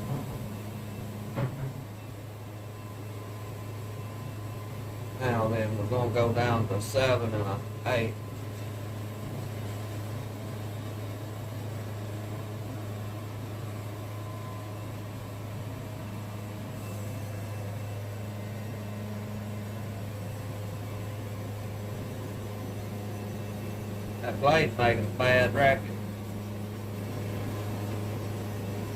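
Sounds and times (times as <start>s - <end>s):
sawmill engine drone: 0.0s - 28.9s.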